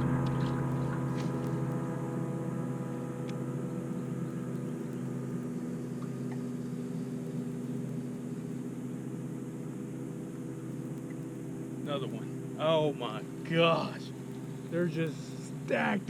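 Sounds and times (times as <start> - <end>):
boat motor humming: 0.0 - 16.0
faint clicks: 6.0 - 8.6, 10.7 - 11.4.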